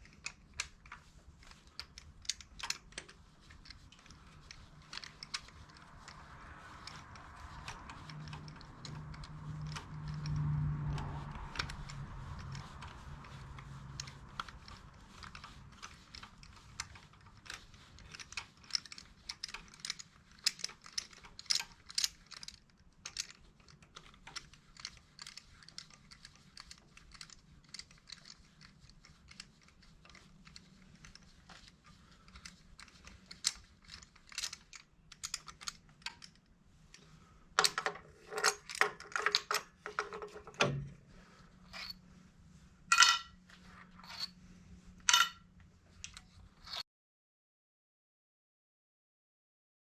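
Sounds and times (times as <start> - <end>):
hand tools clinking on metal: 42.9 - 43.3.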